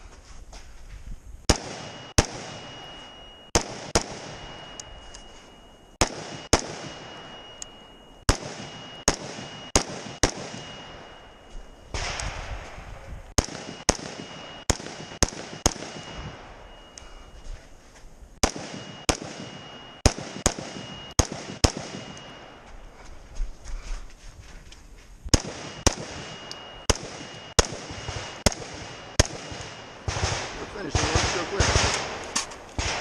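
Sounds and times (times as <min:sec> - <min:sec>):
rifle shots: 0:01.5 - 0:04.7, 0:06.0 - 0:07.5, 0:08.3 - 0:11.2, 0:11.9 - 0:16.8, 0:18.4 - 0:22.6, 0:25.3 - 0:33.0.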